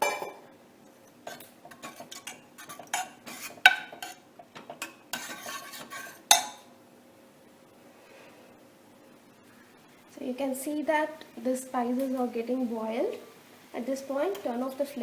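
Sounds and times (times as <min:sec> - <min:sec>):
metal spoon scraping a pot: 0:01.2 - 0:04.2, 0:04.8 - 0:06.6.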